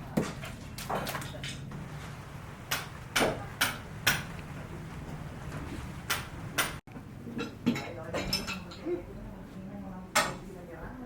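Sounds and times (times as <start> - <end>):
sharp knocks: 2.7 - 4.4.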